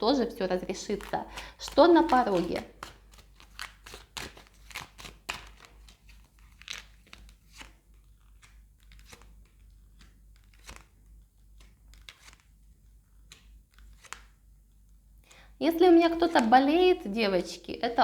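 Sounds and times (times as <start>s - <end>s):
cards snapping and rustling: 0.5s - 14.4s.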